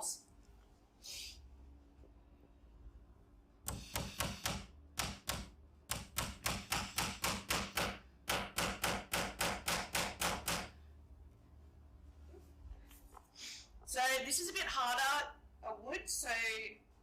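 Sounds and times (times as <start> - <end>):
hammer tapping nail into wood: 3.7 - 10.8.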